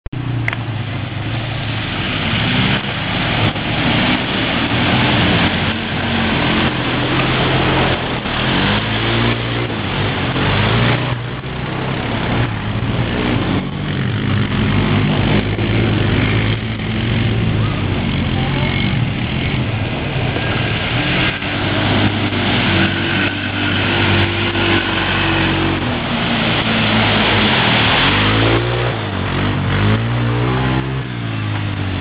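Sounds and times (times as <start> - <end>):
atv engine revving: 0.2 - 32.0
steady rushing noise: 0.2 - 32.0.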